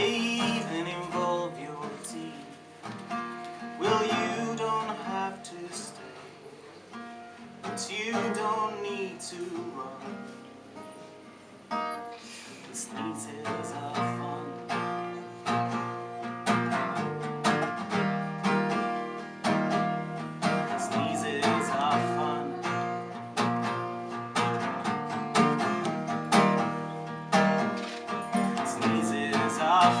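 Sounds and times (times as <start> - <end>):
acoustic guitar strumming: 0.0 - 30.0.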